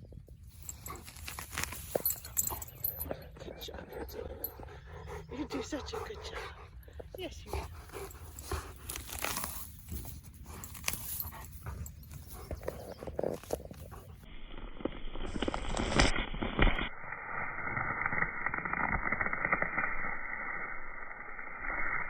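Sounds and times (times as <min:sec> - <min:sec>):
dog ripping and crunching roots: 0:00.5 - 0:03.1, 0:07.6 - 0:16.8.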